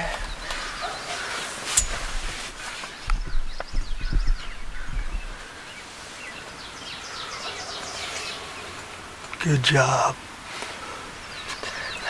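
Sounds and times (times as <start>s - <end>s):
songbirds chirping: 0.0s - 12.0s
rustling: 0.5s - 3.1s.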